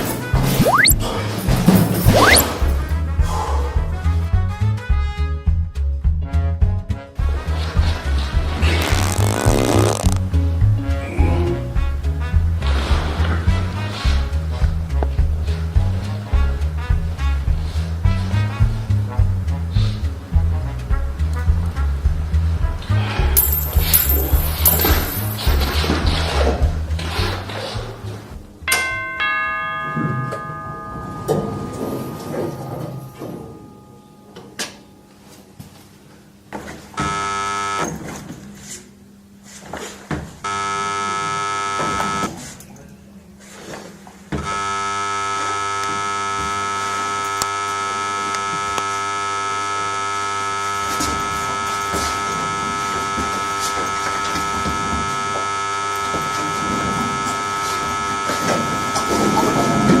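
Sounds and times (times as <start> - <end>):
electronic buzzer tone: 0.5 - 1.0, 2.1 - 2.5, 37.0 - 38.0, 40.5 - 42.4, 44.4 - 60.0.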